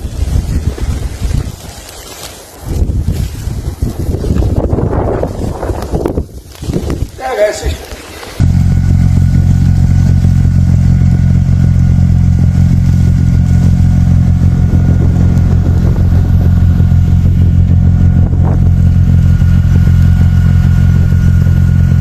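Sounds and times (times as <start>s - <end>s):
large engine running: 8.4s - 22.0s.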